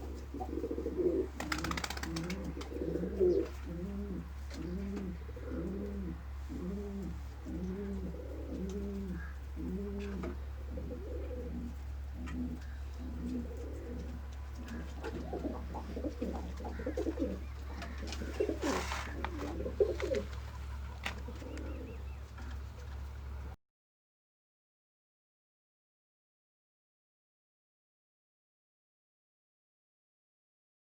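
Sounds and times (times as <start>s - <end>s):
pigeon cooing: 0.0s - 23.6s
steady low hum: 0.0s - 23.6s
brief rustle: 18.1s - 21.7s.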